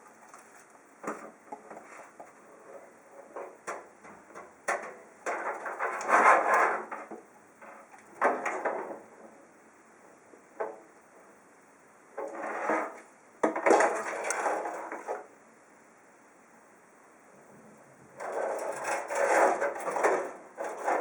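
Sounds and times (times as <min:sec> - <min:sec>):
scraping and rubbing: 0:00.0 - 0:09.3, 0:12.2 - 0:15.3, 0:18.1 - 0:21.0
knocks and clunks of handling: 0:00.2 - 0:02.4.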